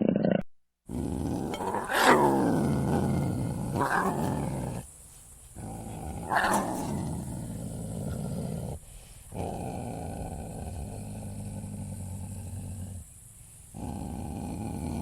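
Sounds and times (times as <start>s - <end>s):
large animal growling: 0.0s - 4.9s, 5.6s - 13.1s, 13.7s - 15.0s.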